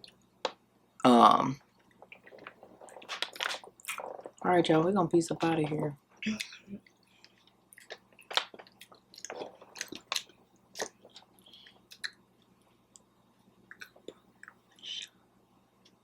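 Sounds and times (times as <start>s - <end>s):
chewing and biting food: 7.4s - 12.2s.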